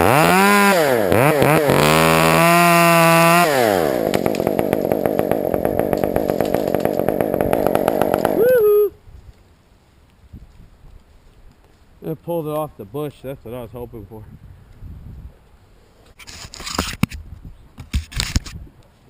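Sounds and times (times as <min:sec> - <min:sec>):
chainsaw revving and idling: 0:00.0 - 0:08.4.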